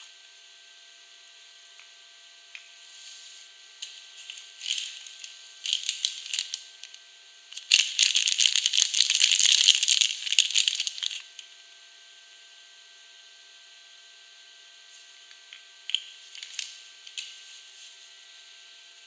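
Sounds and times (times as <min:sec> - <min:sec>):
wrapper crinkling and rustling: 0:03.8 - 0:07.0, 0:07.6 - 0:11.3, 0:16.3 - 0:17.7.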